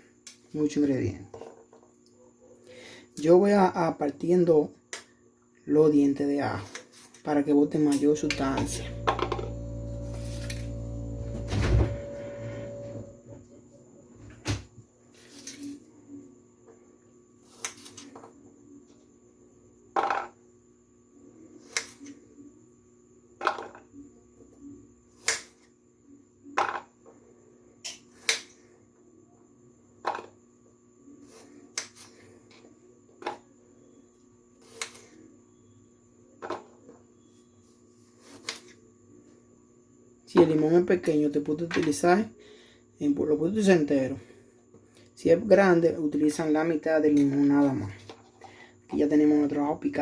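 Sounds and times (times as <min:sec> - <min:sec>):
low hum: 0:08.2 - 0:13.6.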